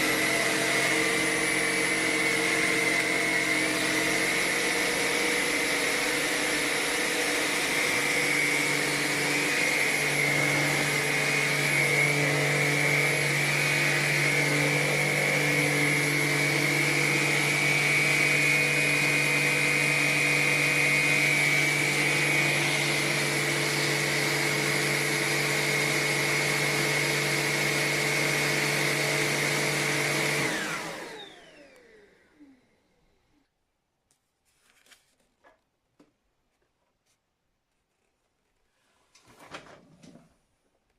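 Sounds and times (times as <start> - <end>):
vacuum cleaner motor whine: 0.0 - 33.2.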